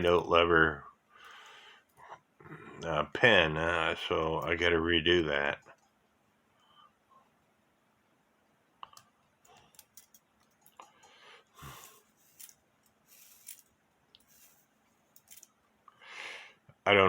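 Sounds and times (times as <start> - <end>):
small metal parts clicking: 9.4 - 15.6.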